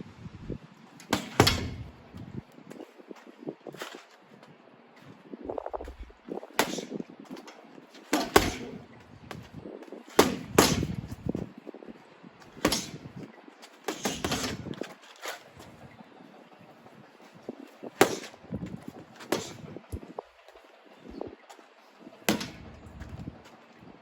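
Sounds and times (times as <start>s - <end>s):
boxing gloves punching heavy bag: 1.0s - 2.0s, 5.9s - 11.5s, 12.5s - 13.2s, 13.8s - 14.9s, 17.9s - 20.1s, 22.3s - 23.2s.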